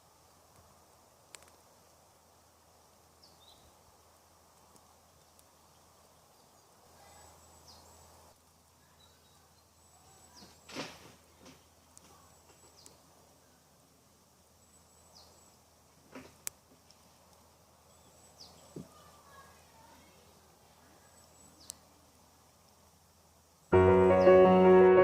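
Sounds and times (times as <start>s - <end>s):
faint steady hiss: 0.0s - 25.0s
high downward bird chirps: 23.7s - 25.0s.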